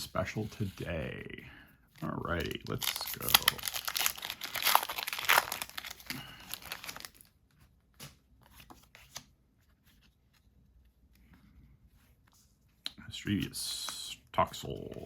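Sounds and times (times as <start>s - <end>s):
cards clicking and rustling: 2.1s - 7.2s
foil wrapper tearing and crinkling: 2.4s - 7.3s.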